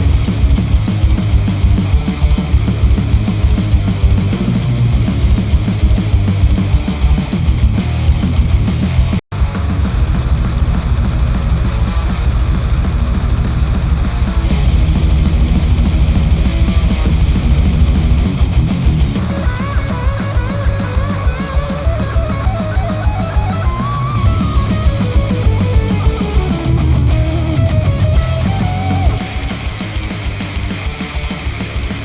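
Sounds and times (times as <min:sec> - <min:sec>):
drum kit: 0:00.0 - 0:32.0
electric guitar: 0:00.0 - 0:32.0
melodic guitar lead line: 0:14.5 - 0:32.0.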